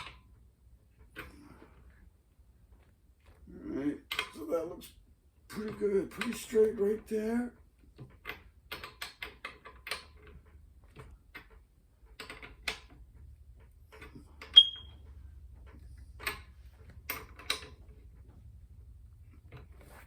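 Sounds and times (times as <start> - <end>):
clicks and knocks of tools: 7.7 - 18.4.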